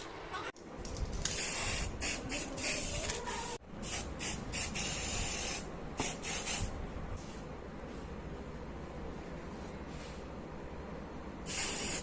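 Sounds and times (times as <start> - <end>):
aerosol spray can hissing: 1.2 - 6.7, 11.5 - 12.0.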